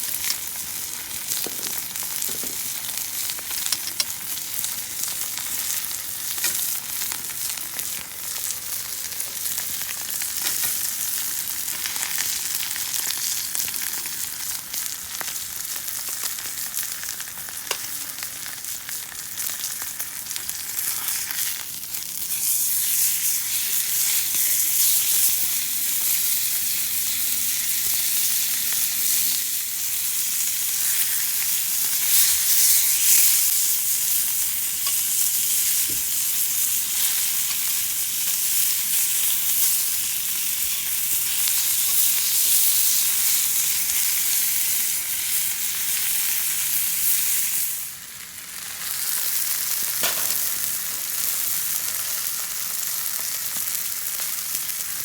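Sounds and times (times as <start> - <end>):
steak sizzling in a hot pan: 0.0 - 55.0.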